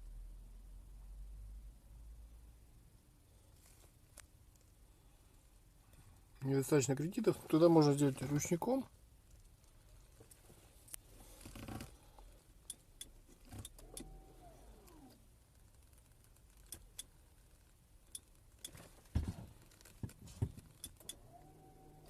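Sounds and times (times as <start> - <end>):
parking brake motor whirring: 13.0 - 15.2, 20.3 - 22.0.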